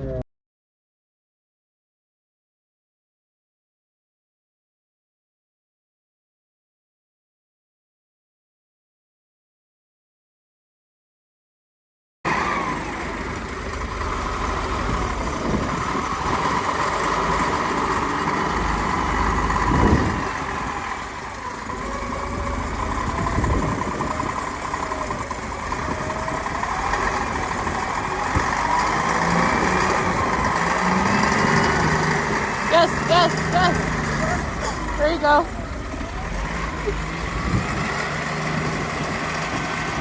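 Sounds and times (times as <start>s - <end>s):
engine running: 12.3s - 40.0s.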